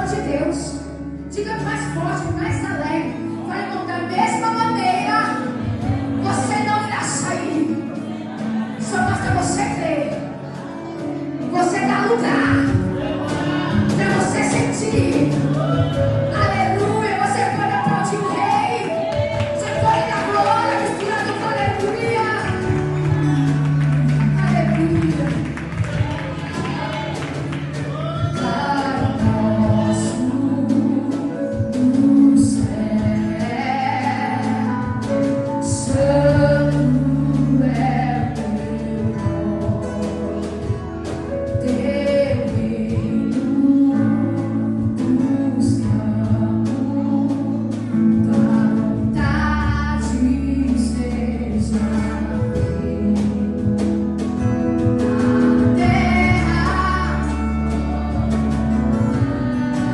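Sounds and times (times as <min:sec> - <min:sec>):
sustained bass notes: 0:00.0 - 0:59.9
gospel singing voices: 0:11.9 - 0:40.6, 0:54.9 - 0:59.9.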